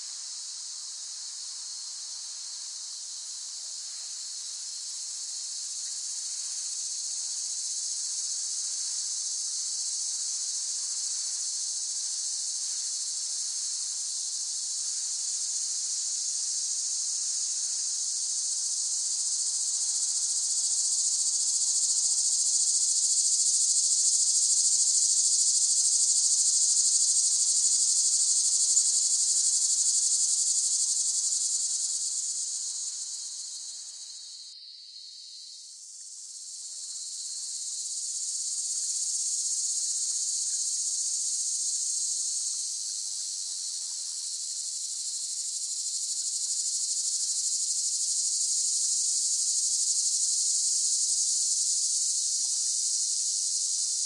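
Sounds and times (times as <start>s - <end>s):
cicadas buzzing: 18.7s - 35.6s, 36.4s - 44.4s, 45.0s - 54.0s.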